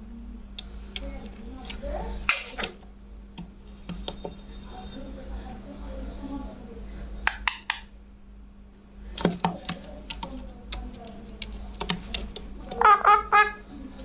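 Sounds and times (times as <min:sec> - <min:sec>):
sharp clicks and taps: 0:09.2 - 0:12.8
parakeet calling: 0:12.7 - 0:13.7.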